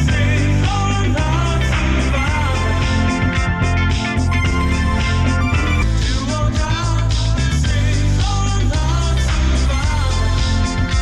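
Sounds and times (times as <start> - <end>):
strong bass line: 0.0 - 10.9
band playing with steady beat: 1.8 - 7.3.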